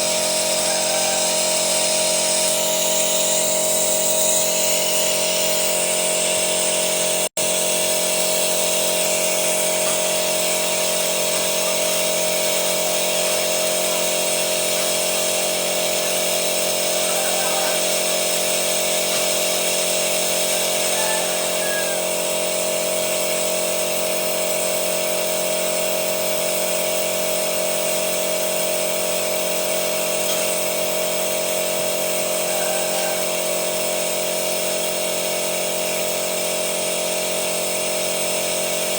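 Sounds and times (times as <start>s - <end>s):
machinery whining over hiss: 0.0s - 7.2s, 14.2s - 23.0s.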